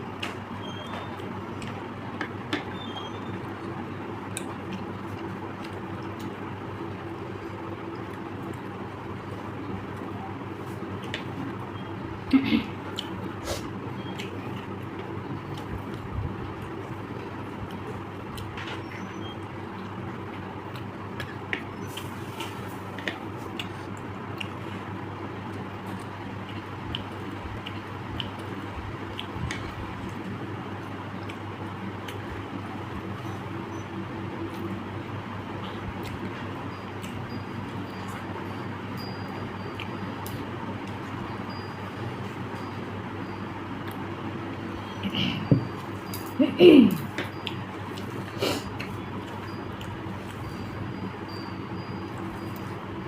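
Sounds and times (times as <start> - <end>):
steady low hum: 0.0 - 53.0
sharp eating clicks: 11.0 - 22.2, 22.9 - 32.5, 38.9 - 42.7, 43.8 - 50.7
person chewing: 20.6 - 32.2, 45.6 - 50.7.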